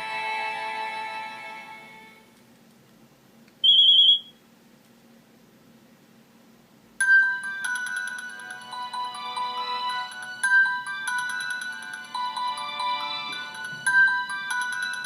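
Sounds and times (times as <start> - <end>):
short high beep: 3.6 - 4.3
electronic ringtone melody: 7.0 - 15.0
string-like ringtone melody: 7.0 - 15.0.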